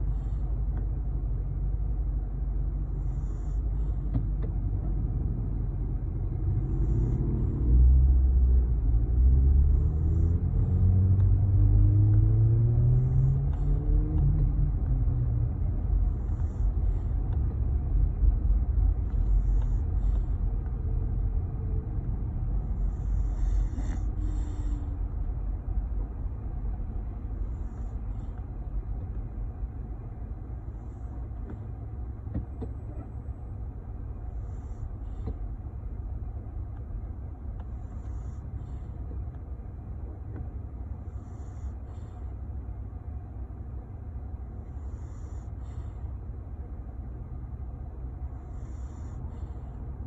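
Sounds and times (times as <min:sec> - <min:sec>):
low road rumble: 0:00.0 - 0:50.0
vehicle engine speeding up: 0:05.0 - 0:18.6.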